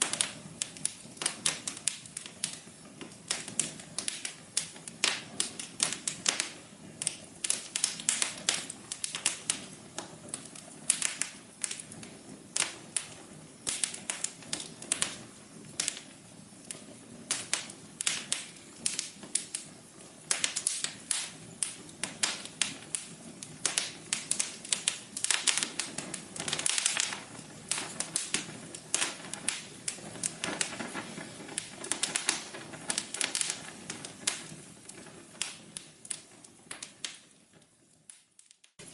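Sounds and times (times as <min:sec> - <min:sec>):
wood fire crackling: 0:00.0 - 0:38.9.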